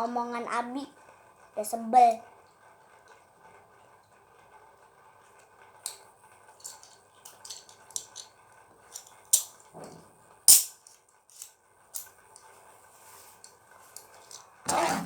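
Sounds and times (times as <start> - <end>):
spinning top clicking and rattling: 5.4 - 9.7, 10.5 - 12.5.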